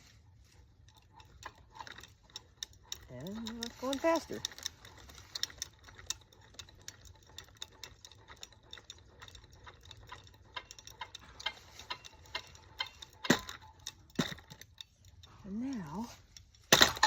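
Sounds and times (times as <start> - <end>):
unbalanced ceiling fan rattling: 0.0 - 17.0.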